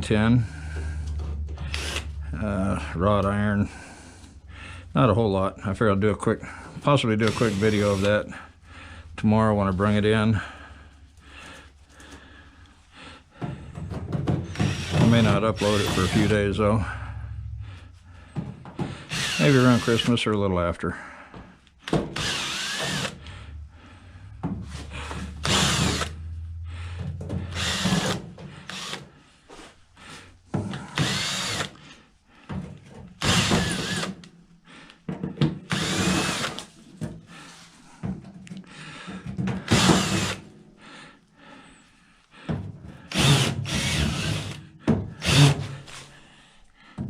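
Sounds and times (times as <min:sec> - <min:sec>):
cordless drill motor running: 0:01.6 - 0:02.2, 0:07.2 - 0:08.1, 0:14.5 - 0:16.4, 0:19.1 - 0:20.1, 0:21.9 - 0:23.2, 0:25.1 - 0:26.2, 0:27.5 - 0:29.1, 0:31.0 - 0:31.8, 0:33.2 - 0:34.2, 0:35.7 - 0:36.6, 0:39.7 - 0:40.4, 0:43.1 - 0:44.6, 0:45.2 - 0:45.8.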